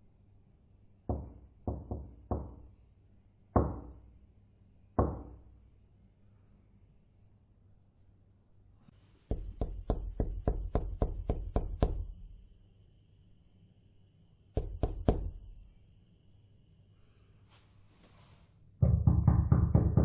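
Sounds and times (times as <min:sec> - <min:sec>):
knocking on a door: 0:01.1 - 0:02.7, 0:03.6 - 0:04.0, 0:05.0 - 0:05.5, 0:09.3 - 0:12.1, 0:14.6 - 0:15.4, 0:18.8 - 0:20.0.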